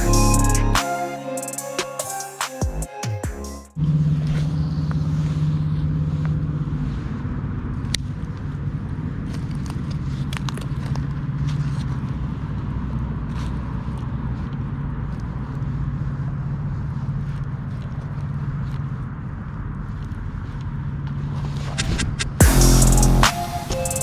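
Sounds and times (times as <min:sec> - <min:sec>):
music track: 0:00.0 - 0:03.8, 0:22.4 - 0:24.0.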